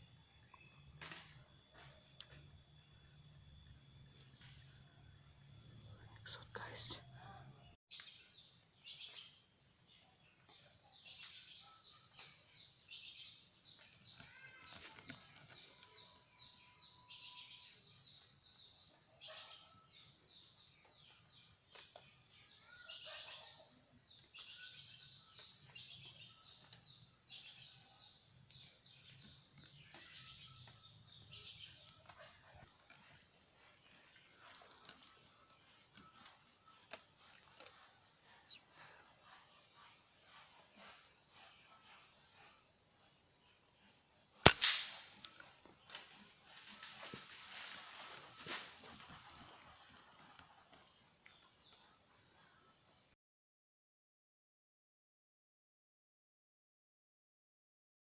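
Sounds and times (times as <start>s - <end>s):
faint birds chirping: 0.0s - 53.2s.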